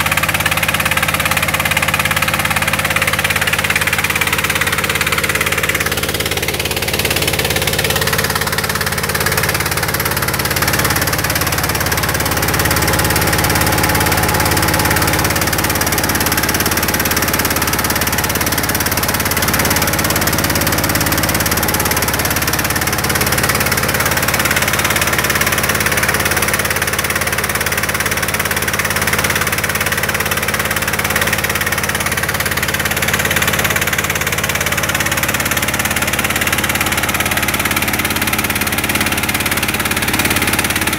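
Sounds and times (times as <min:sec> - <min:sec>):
rice huller engine and machinery running: 0:00.0 - 0:40.9.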